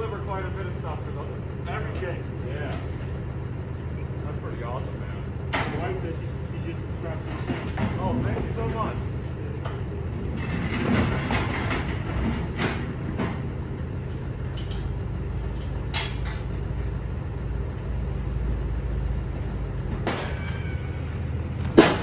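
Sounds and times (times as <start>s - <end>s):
truck engine idling: 0.0s - 22.0s
sharp knocks and clatters: 9.6s - 13.4s, 21.6s - 22.0s.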